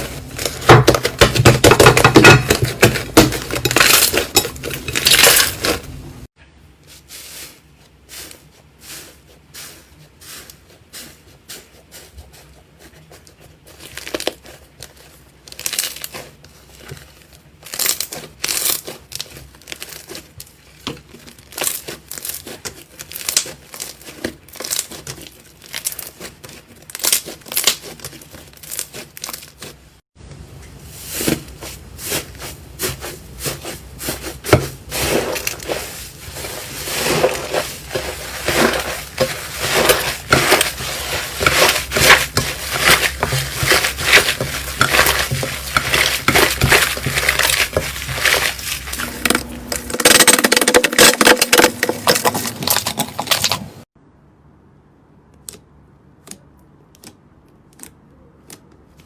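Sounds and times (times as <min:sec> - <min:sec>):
slime crackling and popping: 0:17.6 - 0:20.3, 0:21.3 - 0:29.7.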